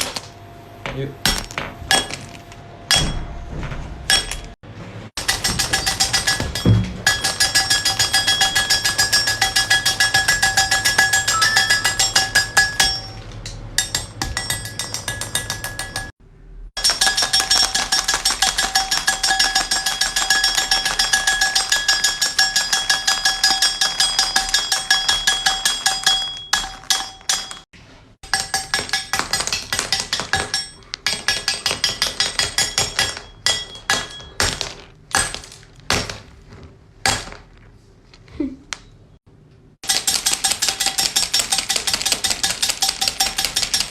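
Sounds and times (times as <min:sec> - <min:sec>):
steady ringing tone: 0:05.4 - 0:13.2
knife chopping hard candy: 0:16.8 - 0:27.6, 0:28.3 - 0:36.4, 0:39.8 - 0:43.9.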